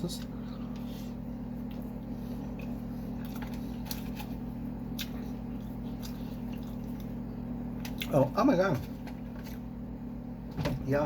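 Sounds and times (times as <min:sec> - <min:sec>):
low electrical hum: 0:00.0 - 0:11.0
mouth chewing clicks and smacks: 0:04.9 - 0:07.2.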